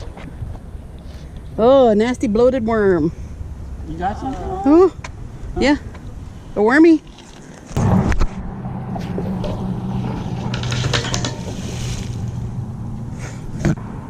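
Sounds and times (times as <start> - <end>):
low engine hum: 7.7 - 14.0.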